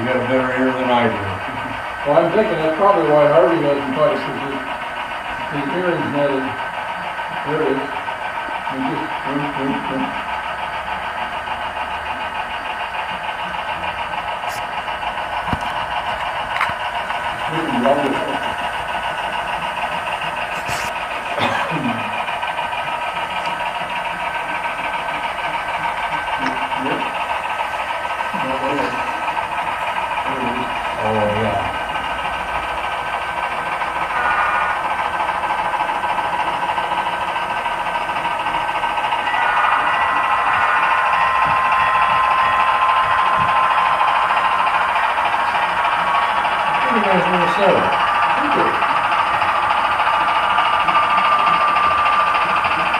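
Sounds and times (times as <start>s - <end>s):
model train motor whir: 22.2s - 52.9s.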